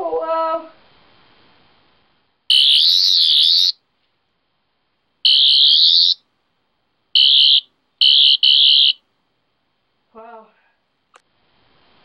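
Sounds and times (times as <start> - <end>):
high-pitched warbling whine: 2.5 - 3.7.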